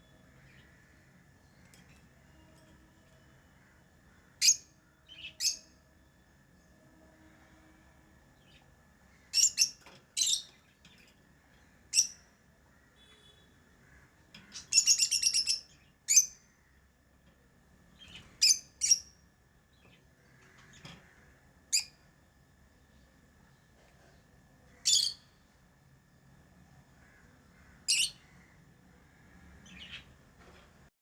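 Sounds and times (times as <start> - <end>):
birds chirping: 14.3 - 16.4, 27.0 - 30.3.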